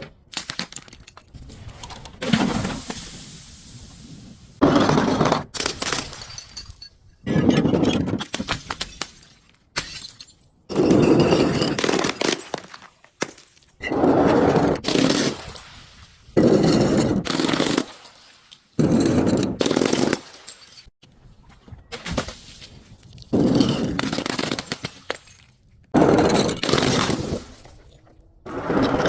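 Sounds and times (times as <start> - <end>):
glass bottles shattering: 5.6 - 7.3, 8.8 - 12.8, 18.8 - 20.9.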